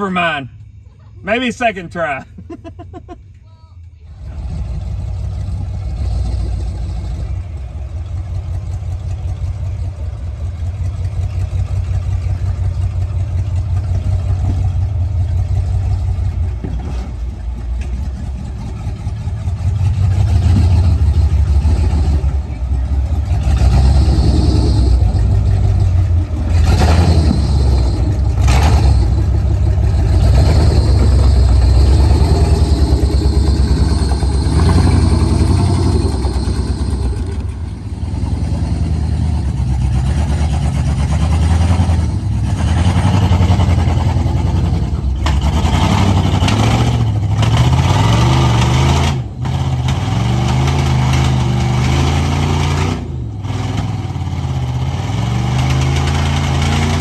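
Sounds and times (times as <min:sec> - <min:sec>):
engine revving: 0:04.2 - 0:07.6, 0:18.2 - 0:57.0.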